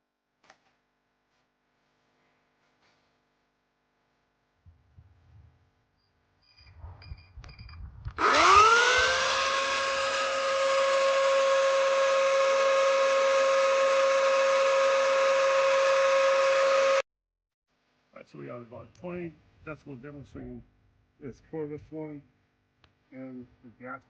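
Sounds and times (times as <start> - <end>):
chainsaw electric motor whine: 8.2 - 17.0.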